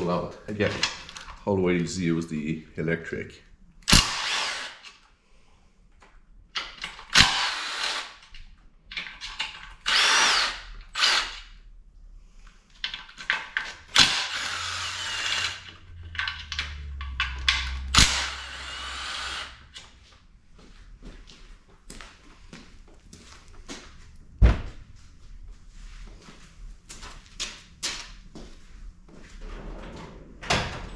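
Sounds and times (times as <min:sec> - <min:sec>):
cordless power tool whining: 0:03.9 - 0:04.9, 0:07.2 - 0:08.2, 0:09.8 - 0:11.4, 0:13.9 - 0:20.0.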